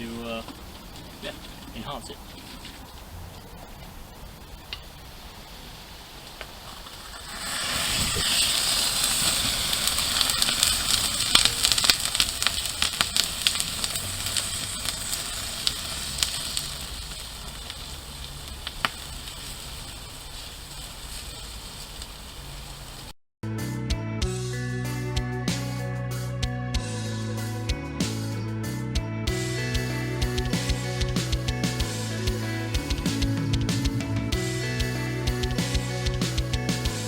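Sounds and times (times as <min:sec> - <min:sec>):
sharp crack: 0:00.0 - 0:23.1
sharp crackles and pops: 0:00.0 - 0:23.2
thermite burning with hiss: 0:00.0 - 0:23.2, 0:29.3 - 0:37.0.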